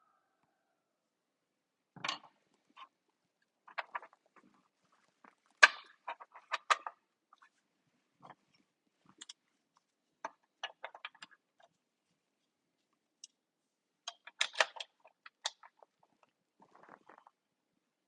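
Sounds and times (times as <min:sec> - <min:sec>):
plastic parts clicking and knocking: 0:02.0 - 0:02.9, 0:03.7 - 0:04.4, 0:05.4 - 0:07.0, 0:10.2 - 0:11.7, 0:14.0 - 0:17.4.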